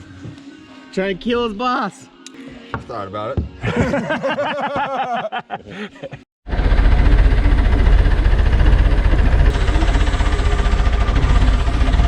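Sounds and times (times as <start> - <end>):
engine running loudly: 6.5 - 12.0.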